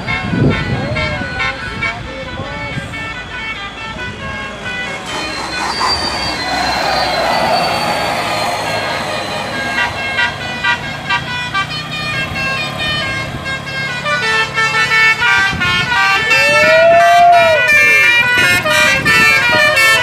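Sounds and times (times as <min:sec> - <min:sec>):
bus horn playing melody: 0:00.0 - 0:20.0
low engine hum: 0:04.6 - 0:16.1.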